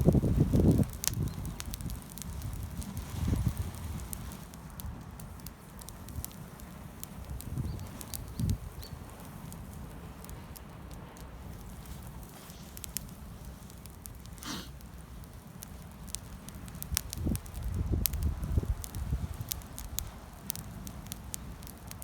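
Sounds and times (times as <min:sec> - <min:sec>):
campfire crackling and popping: 0:00.0 - 0:22.0.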